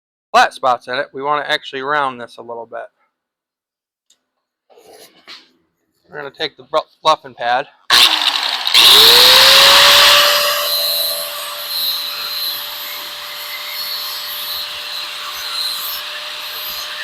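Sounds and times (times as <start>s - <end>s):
electric buffer motor spinning: 7.9s - 17.0s.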